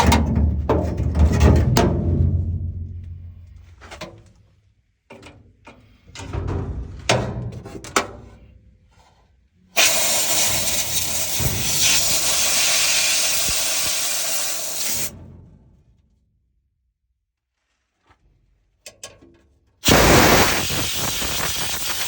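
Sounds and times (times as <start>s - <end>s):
pressurised spray jet hissing: 9.8s - 15.1s, 19.8s - 22.0s.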